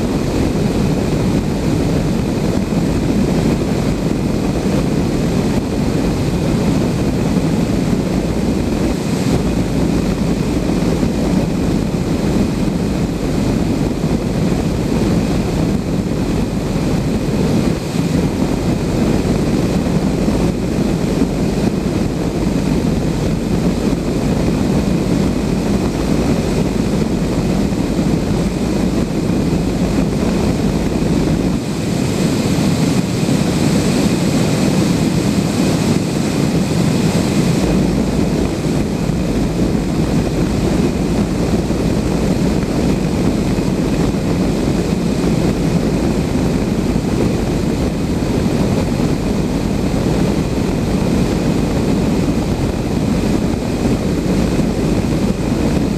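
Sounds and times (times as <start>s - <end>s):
airflow rushing around cockpit: 0.0s - 55.9s.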